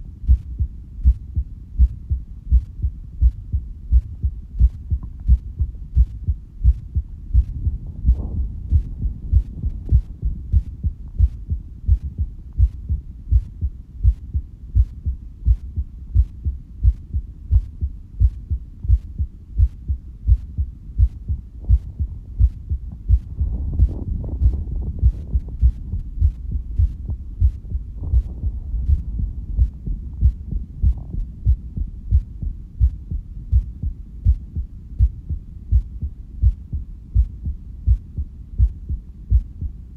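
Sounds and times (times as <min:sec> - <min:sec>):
heartbeat: 0:00.0 - 0:39.9
noise burst: 0:21.0 - 0:34.4.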